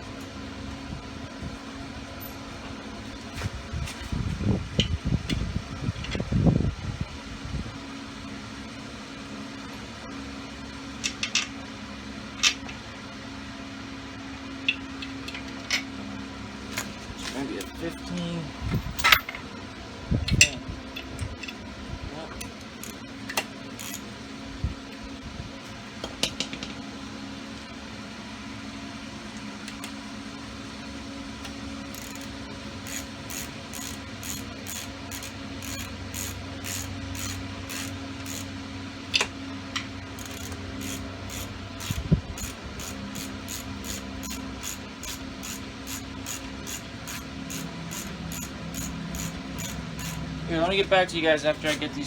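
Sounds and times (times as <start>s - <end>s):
steady low hum: 0.0s - 52.0s
metal tools clanking: 16.8s - 19.4s, 31.9s - 38.5s, 40.2s - 50.8s
ratchet clicking: 22.8s - 23.0s, 23.8s - 24.0s, 31.9s - 38.5s, 40.2s - 50.3s.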